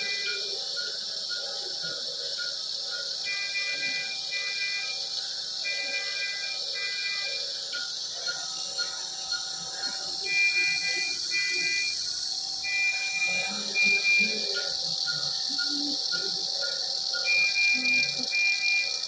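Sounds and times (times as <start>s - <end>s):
long high electronic tones: 3.2s - 19.0s
short electronic beeps: 10.3s - 12.0s, 12.7s - 16.2s, 17.2s - 18.9s.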